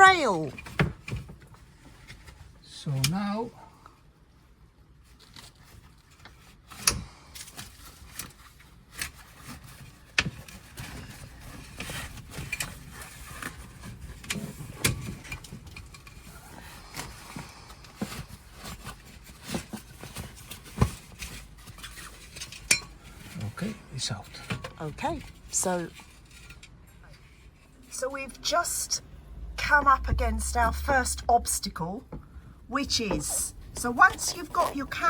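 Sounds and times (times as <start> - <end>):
knocks clicks and scraping: 29.6 - 35.0.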